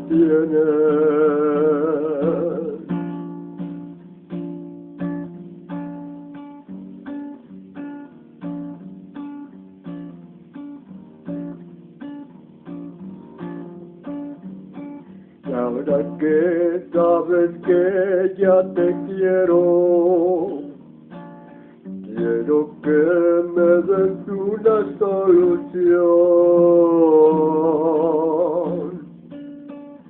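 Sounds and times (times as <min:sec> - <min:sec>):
person singing with vibrato: 0:00.0 - 0:03.0, 0:15.4 - 0:20.8, 0:22.0 - 0:29.1
acoustic guitar chords: 0:00.0 - 0:30.0.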